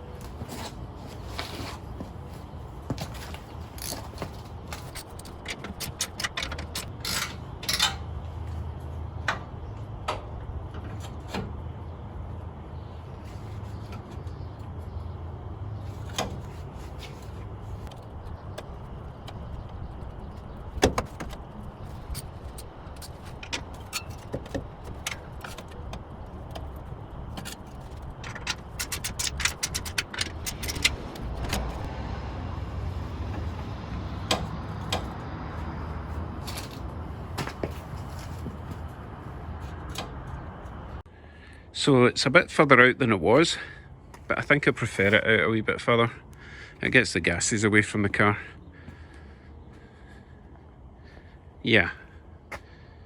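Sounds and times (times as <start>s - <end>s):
metal knocks and clinks: 3.7s - 8.1s, 17.9s - 31.9s
quick clicks: 27.4s - 31.9s.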